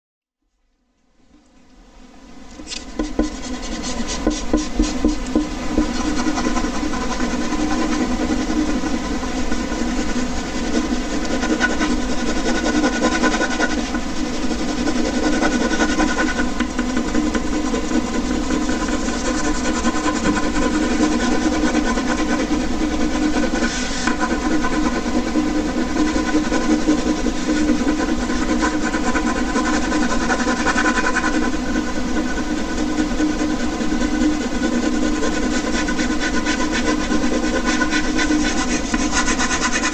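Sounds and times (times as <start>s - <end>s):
air conditioner humming: 1.0s - 39.9s.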